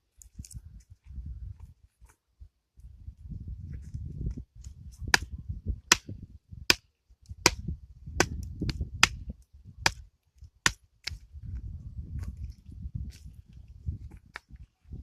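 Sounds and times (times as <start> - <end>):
hatchet chopping wood: 5.1 - 10.0, 10.6 - 11.2.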